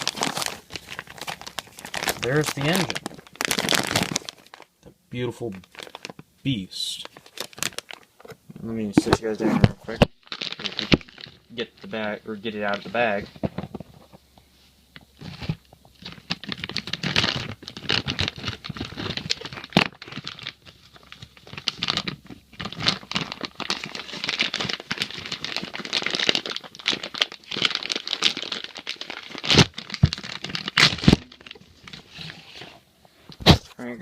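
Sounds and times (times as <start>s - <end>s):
plastic bag crinkling: 0.0s - 14.2s, 15.1s - 33.6s.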